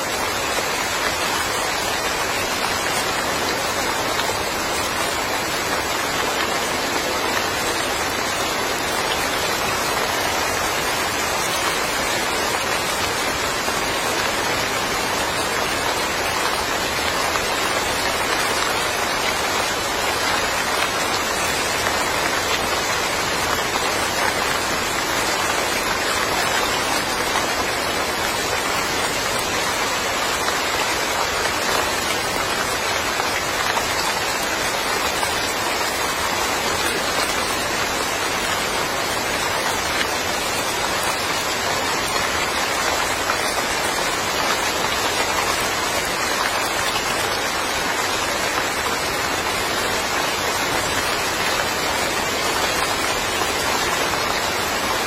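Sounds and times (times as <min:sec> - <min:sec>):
steady rain falling: 0:00.0 - 0:55.0.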